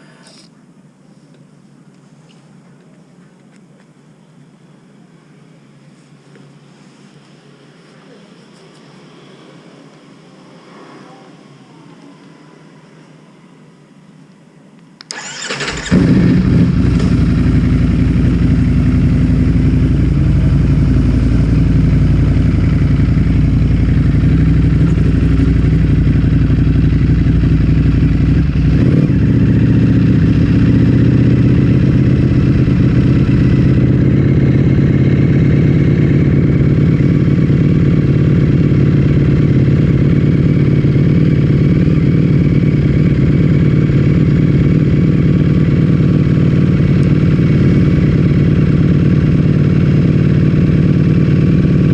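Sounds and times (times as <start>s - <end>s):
motorcycle engine idling: 15.1s - 51.9s.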